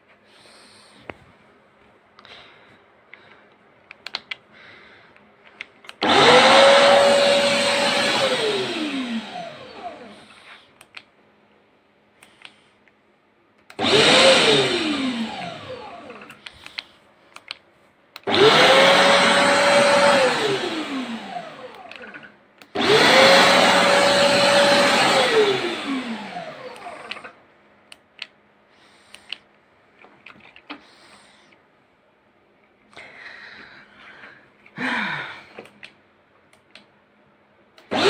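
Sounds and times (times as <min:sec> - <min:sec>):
vacuum motor whining: 0:06.0 - 0:10.2, 0:13.8 - 0:16.4, 0:18.2 - 0:27.4.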